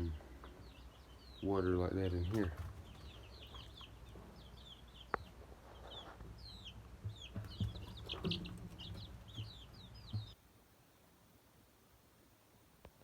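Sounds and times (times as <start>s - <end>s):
baby chicks peeping: 0.0s - 10.4s.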